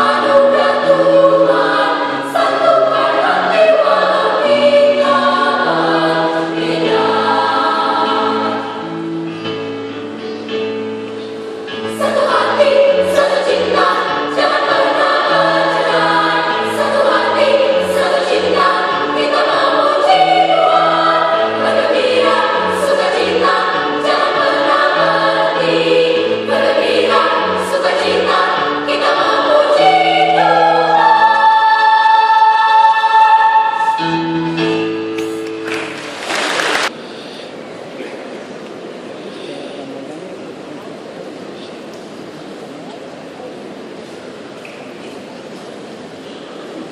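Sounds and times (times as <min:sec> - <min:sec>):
children's choir singing: 0:00.0 - 0:36.9
held accompaniment chords: 0:00.0 - 0:37.0.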